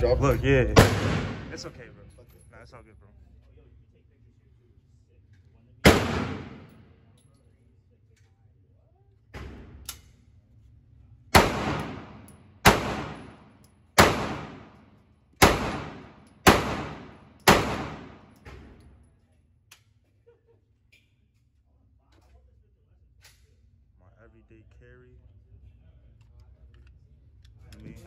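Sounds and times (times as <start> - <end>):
pistol shots echoing: 0.8 - 1.8, 5.8 - 6.8, 11.3 - 14.8, 15.4 - 18.4.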